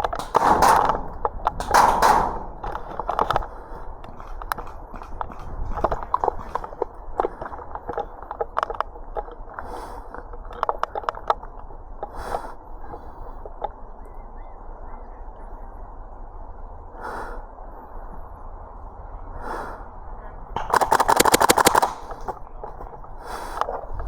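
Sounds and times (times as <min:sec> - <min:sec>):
rapid airsoft rifle fire: 0:00.0 - 0:03.0, 0:20.6 - 0:22.4
person breathing hard: 0:09.5 - 0:10.4, 0:12.0 - 0:13.5, 0:16.9 - 0:18.2, 0:19.3 - 0:20.1, 0:23.0 - 0:24.0.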